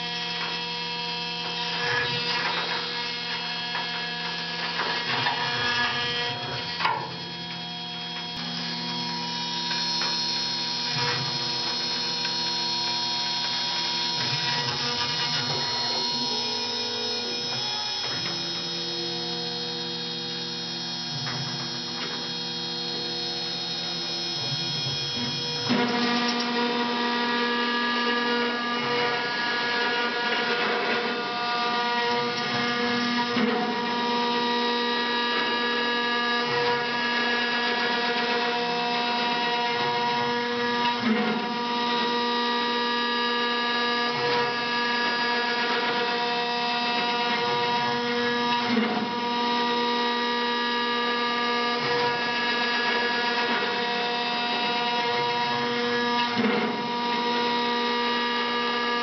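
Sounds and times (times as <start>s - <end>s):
gritty cutting noise: 0.0s - 37.4s
milling machine spindle whine: 0.0s - 59.0s.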